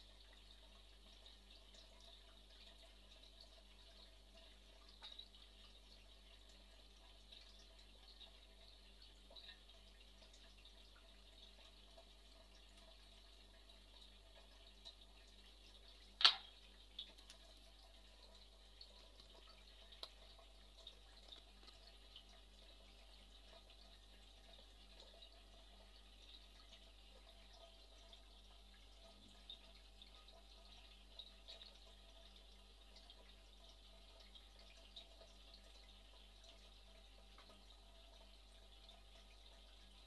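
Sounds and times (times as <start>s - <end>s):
low steady hum: 0.0s - 40.0s
single sharp click: 16.2s - 16.5s.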